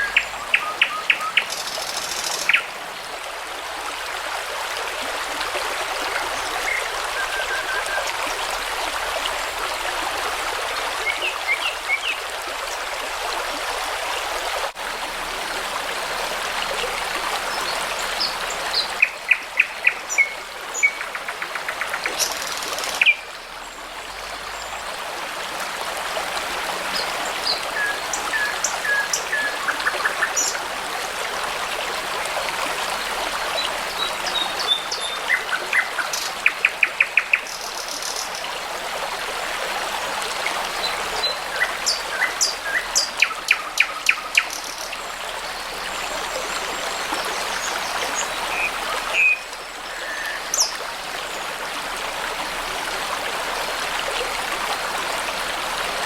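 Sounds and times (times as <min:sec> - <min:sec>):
babbling brook flowing: 0:00.0 - 0:56.0
songbirds singing: 0:33.6 - 0:38.4, 0:40.8 - 0:50.8.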